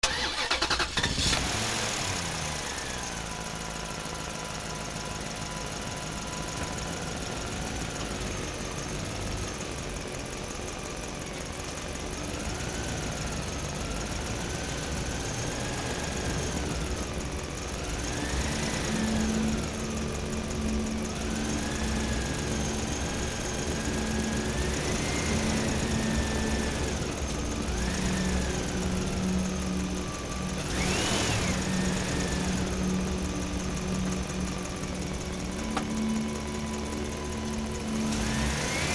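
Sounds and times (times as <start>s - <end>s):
excavator engine running: 0.0s - 38.9s
hydraulic whine rising and falling: 14.8s - 38.9s.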